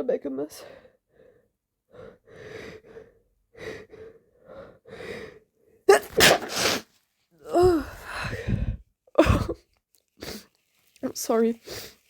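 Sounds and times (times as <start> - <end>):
loud wet sneeze: 5.9 - 6.9.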